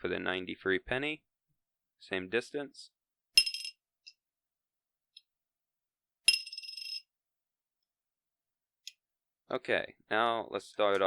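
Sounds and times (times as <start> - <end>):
coin clinking on a bowl: 3.4 - 3.8, 6.3 - 7.1.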